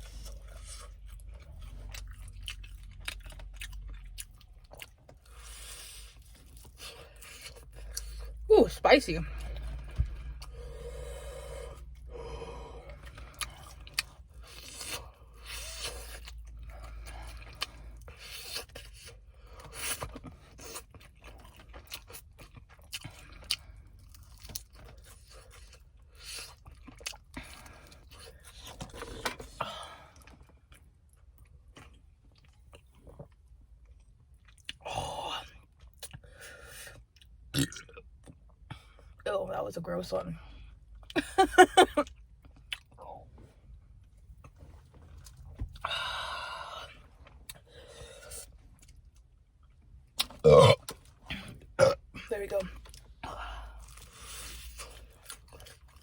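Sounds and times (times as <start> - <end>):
chewing crispy fried chicken: 0.0 - 8.4, 9.3 - 39.2, 40.5 - 51.8, 52.7 - 56.0
person burping: 37.5 - 37.8, 50.4 - 52.3.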